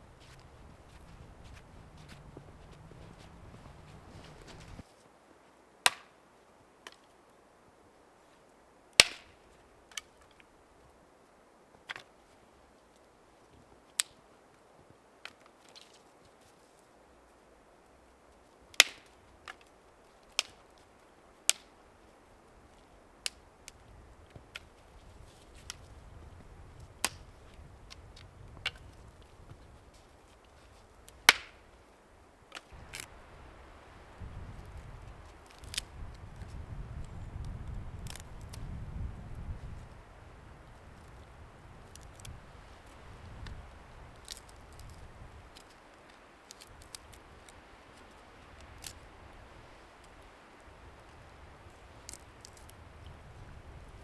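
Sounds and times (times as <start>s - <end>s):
steady low rumble: 0.0s - 4.8s
axe chopping wood: 31.3s - 31.6s.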